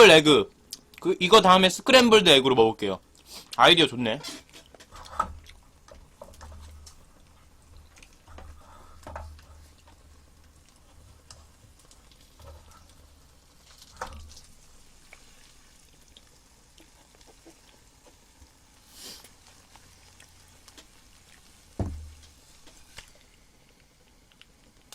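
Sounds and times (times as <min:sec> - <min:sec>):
eating and food-handling noises: 0:03.0 - 0:24.9
small clicks and crackles: 0:04.2 - 0:21.6, 0:22.2 - 0:24.9
knocks: 0:21.8 - 0:22.2.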